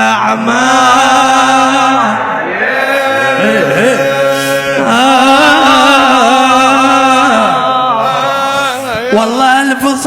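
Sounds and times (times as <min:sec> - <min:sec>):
man chanting an elegy: 0:02.6 - 0:10.0.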